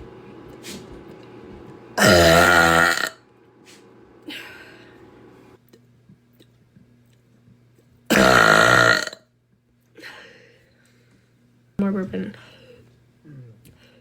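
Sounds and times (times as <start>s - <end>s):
woman burping: 2.0s - 3.2s, 8.1s - 9.2s.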